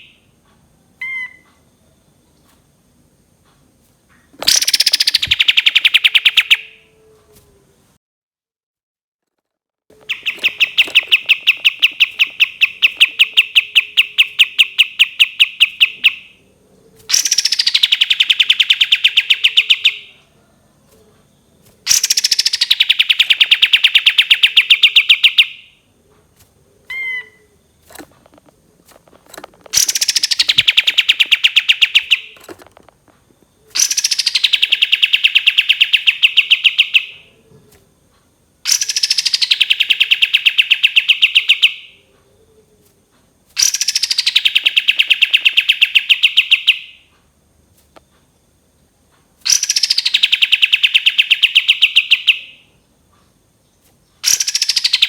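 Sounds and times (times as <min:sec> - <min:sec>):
songbird rapid trill: 0:01.0 - 0:01.4, 0:04.3 - 0:06.8, 0:09.9 - 0:20.3, 0:21.4 - 0:37.3, 0:38.6 - 0:42.0, 0:43.6 - 0:47.1, 0:49.4 - 0:55.0.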